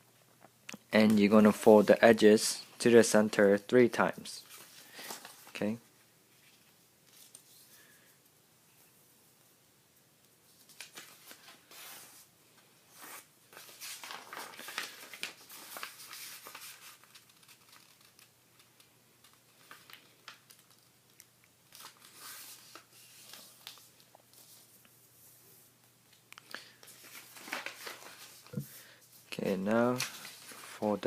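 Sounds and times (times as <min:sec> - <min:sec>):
paper crinkling and rustling: 0:04.3 - 0:05.8, 0:06.4 - 0:07.8, 0:10.5 - 0:12.3, 0:12.9 - 0:24.8, 0:26.7 - 0:31.0.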